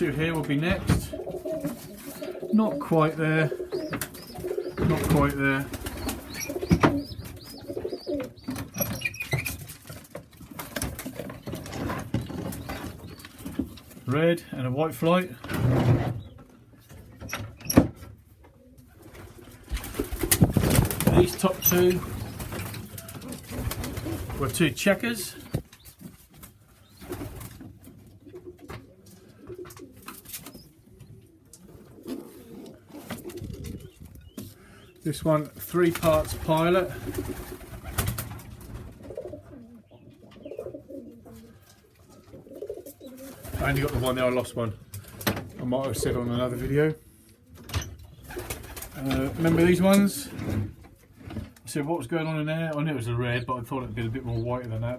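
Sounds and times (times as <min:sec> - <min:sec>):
clicks of birds moving: 0:00.3 - 0:14.2, 0:15.2 - 0:51.7
pigeons cooing: 0:01.0 - 0:09.4, 0:28.0 - 0:35.0, 0:36.5 - 0:38.1, 0:38.9 - 0:44.2.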